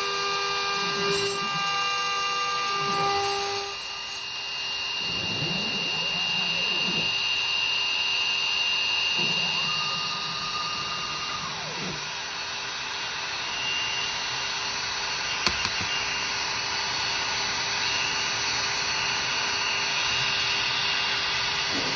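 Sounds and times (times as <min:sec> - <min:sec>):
router spindle whine: 0:00.0 - 0:21.9
rising and falling whine: 0:05.0 - 0:16.6.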